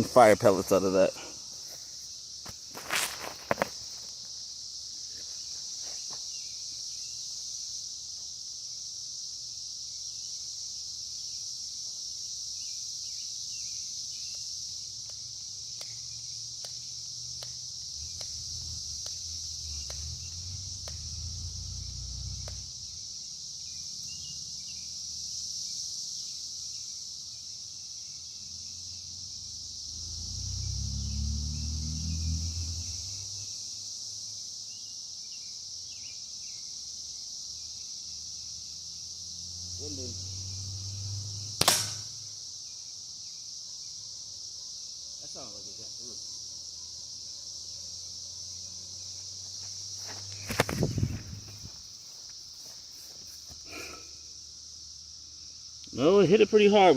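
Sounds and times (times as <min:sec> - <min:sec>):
high-pitched insect chorus: 0:00.0 - 0:56.9
faint ticks: 0:14.2 - 0:21.2, 0:22.4 - 0:22.7.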